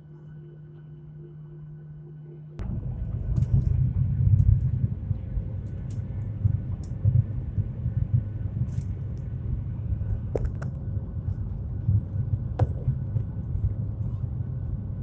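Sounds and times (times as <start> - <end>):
jet engine rumble in cabin: 0.0 - 15.0.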